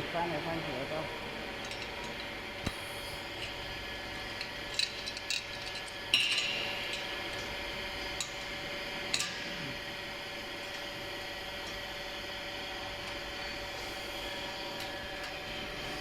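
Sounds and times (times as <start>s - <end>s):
steady hum: 0.0s - 16.0s
metal parts clicking and clinking: 4.7s - 7.1s, 9.1s - 9.4s.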